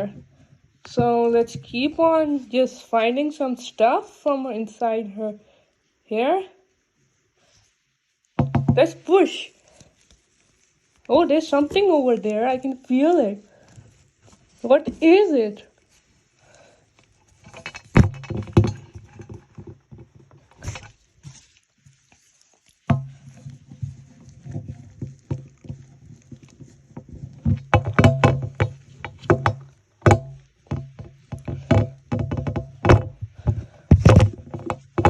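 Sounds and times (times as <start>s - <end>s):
hands rubbing through doll hair: 7.5s - 16.4s, 21.2s - 24.5s
plastic clicks and knocks: 24.5s - 35.0s.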